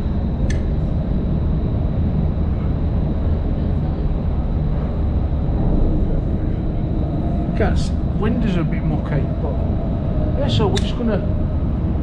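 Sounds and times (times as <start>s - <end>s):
ferry engine rumble: 0.0s - 12.0s
wind buffeting microphone: 0.0s - 12.0s.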